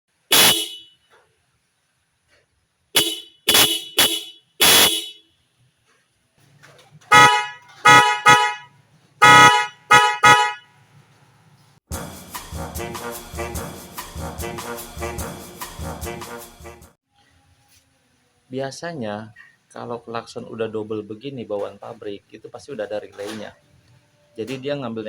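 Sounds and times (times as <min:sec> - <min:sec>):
car horns honking: 0:00.1 - 0:01.2, 0:03.0 - 0:05.5, 0:07.1 - 0:10.8
music: 0:11.9 - 0:17.0.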